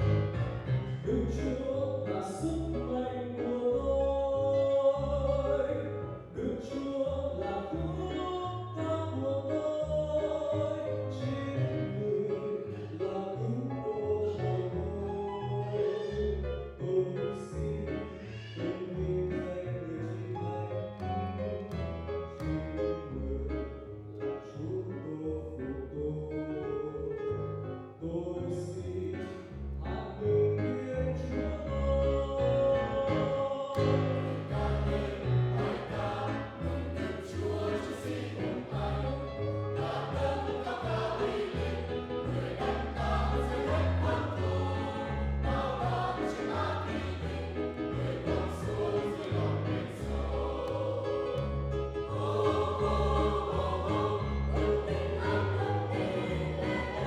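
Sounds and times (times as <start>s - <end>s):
keyboard accompaniment: 0.0s - 24.5s, 29.2s - 57.0s
choir singing a hymn: 33.2s - 57.0s.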